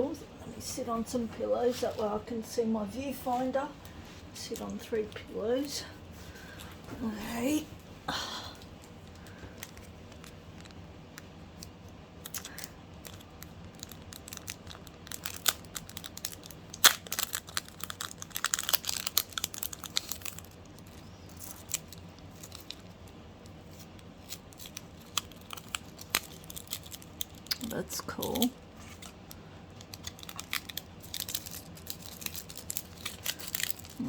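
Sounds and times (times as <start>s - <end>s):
plastic packaging crinkling: 9.1s - 10.8s, 11.6s - 34.0s.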